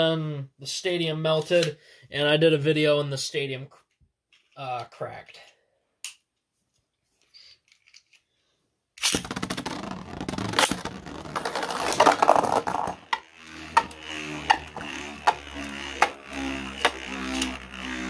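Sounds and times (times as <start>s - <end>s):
spinning tops clattering and scraping: 9.0s - 18.0s
spinning tops humming: 9.3s - 18.0s.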